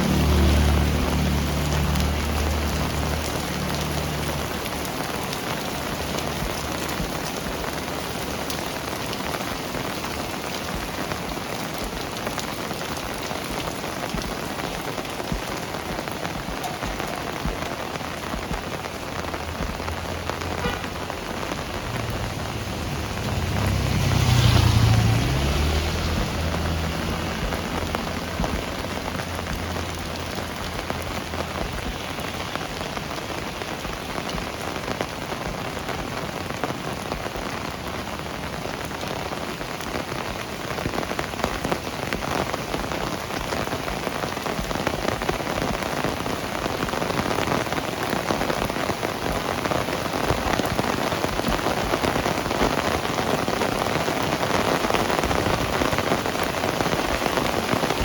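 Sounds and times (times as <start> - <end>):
passing vehicle hum: 0.0 - 6.3, 18.9 - 32.6
heavy rain splashing: 0.0 - 58.0.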